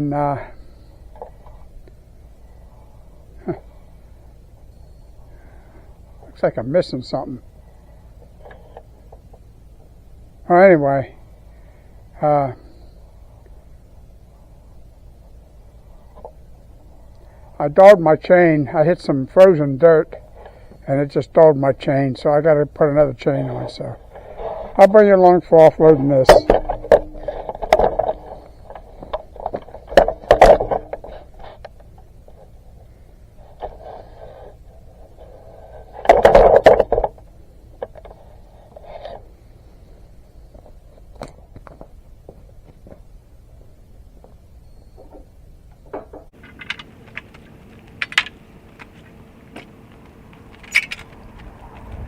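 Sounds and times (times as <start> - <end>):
logs knocking onto a pile: 26.3 - 28.4.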